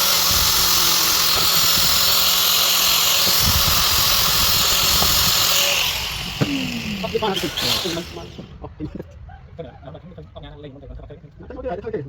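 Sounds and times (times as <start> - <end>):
power tool whirring: 0.0 - 8.6.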